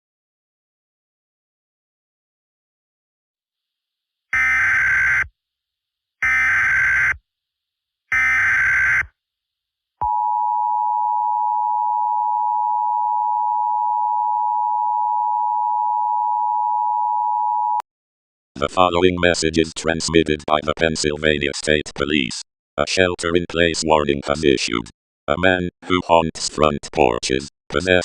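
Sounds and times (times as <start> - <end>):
long steady attention tone: 10.0 - 17.8.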